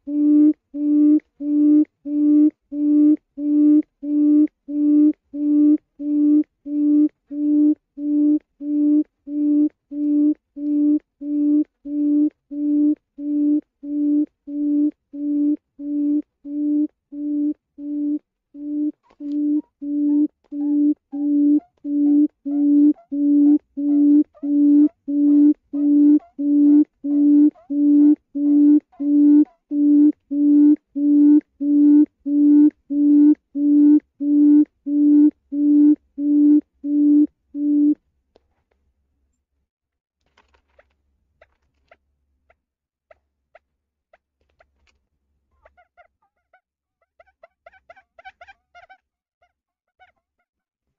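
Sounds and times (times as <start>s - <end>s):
quail call hooting notes: 0.0s - 38.0s
faint higher chirps: 0.1s - 38.0s.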